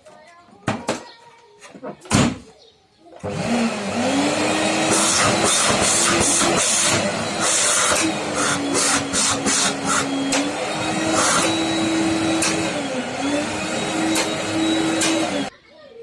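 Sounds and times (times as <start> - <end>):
vacuum cleaner motor whine: 3.2 - 15.5.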